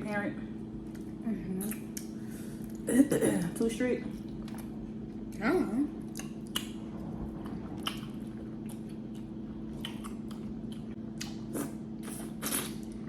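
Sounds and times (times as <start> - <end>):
steady background hum: 0.0 - 13.0
chewing and smacking: 4.1 - 13.0.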